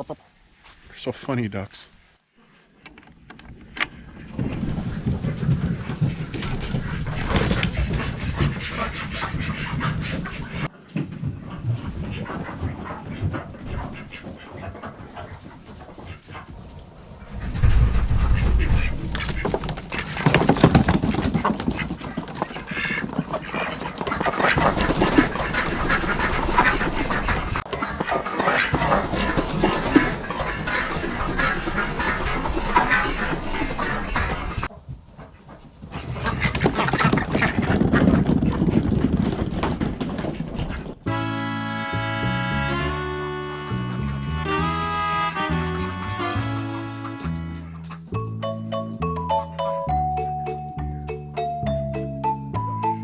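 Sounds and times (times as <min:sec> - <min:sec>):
ducks quacking: 0:04.2 - 0:10.7, 0:12.0 - 0:16.5, 0:17.4 - 0:34.7, 0:41.1 - 0:48.1
low rumble: 0:17.3 - 0:19.6.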